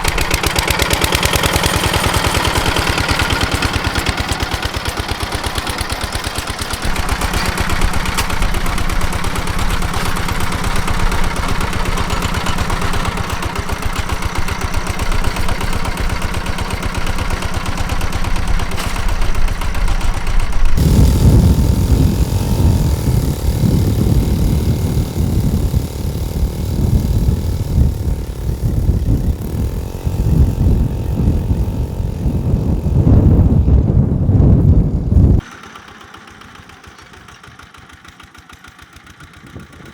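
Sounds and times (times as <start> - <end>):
rotary tiller clattering: 0.0 - 39.9
tractor engine running: 0.0 - 39.9
wind rumbling on microphone: 6.8 - 35.5.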